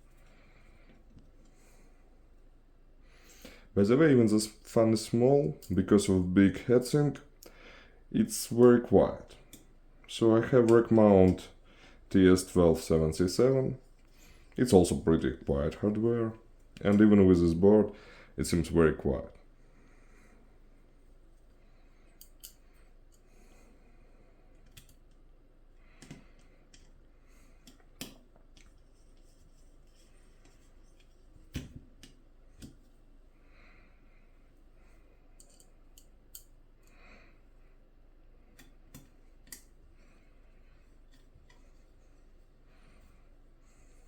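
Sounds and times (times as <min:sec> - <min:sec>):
small parts clicking and tapping: 0:24.6 - 0:25.3, 0:26.0 - 0:27.0, 0:35.4 - 0:36.5.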